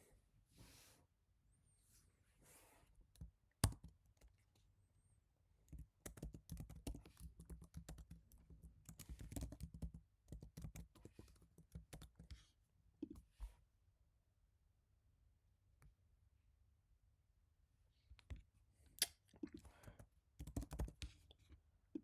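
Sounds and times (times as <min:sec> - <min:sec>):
keyboard typing: 0:05.7 - 0:12.3, 0:19.9 - 0:21.0.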